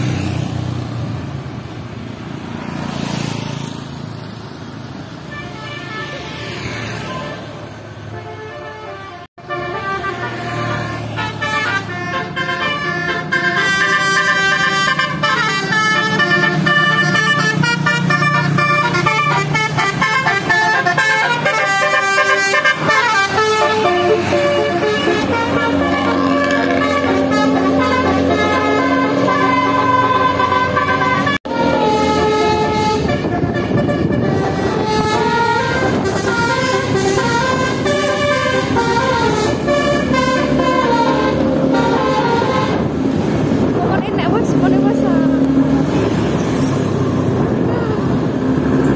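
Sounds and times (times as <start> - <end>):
bus multi-tone air horns: 5.2 - 43.4.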